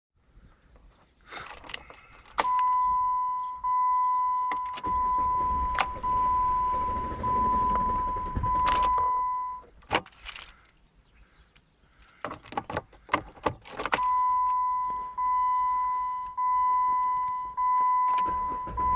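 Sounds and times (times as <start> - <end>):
keys jangling in ignition: 1.3 - 6.2, 8.2 - 11.0, 11.9 - 15.2, 17.0 - 18.9
dashboard warning chime beeping: 2.4 - 9.7, 13.9 - 18.9
low rumble: 4.3 - 9.6.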